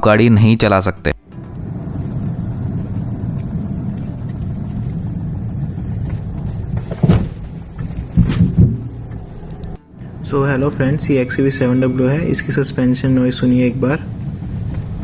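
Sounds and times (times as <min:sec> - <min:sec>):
car low rumble: 0:01.2 - 0:15.0
suspension knocks: 0:01.3 - 0:09.8, 0:14.0 - 0:15.0.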